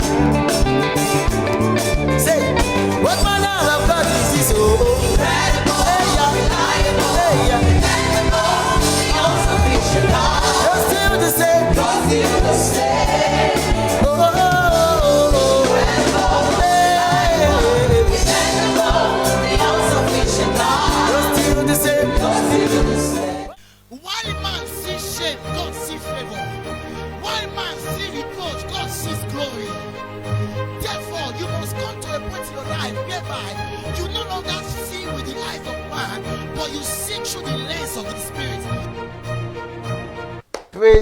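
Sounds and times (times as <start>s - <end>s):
gospel band with guitar: 0.0s - 23.7s
person singing: 2.4s - 24.4s.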